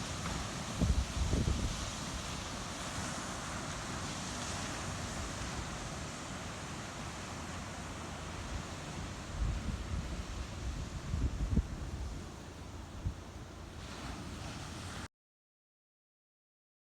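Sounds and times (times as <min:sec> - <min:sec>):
wind rumbling on microphone: 0:00.0 - 0:03.2, 0:08.5 - 0:15.1
ocean surf hissing: 0:00.0 - 0:15.1.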